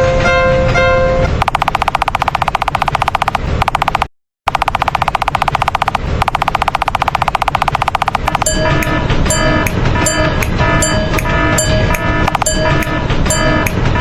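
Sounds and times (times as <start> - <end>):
rapid pitched rattling: 1.3 - 9.4, 12.3 - 13.4.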